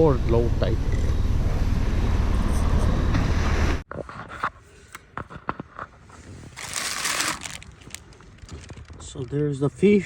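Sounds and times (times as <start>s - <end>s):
handling rustle: 6.0s - 9.7s.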